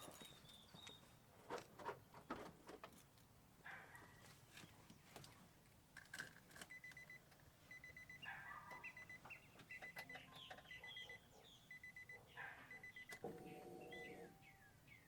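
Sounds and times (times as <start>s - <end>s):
car warning chime beeping: 6.7s - 14.6s
faint chirps: 7.7s - 15.0s.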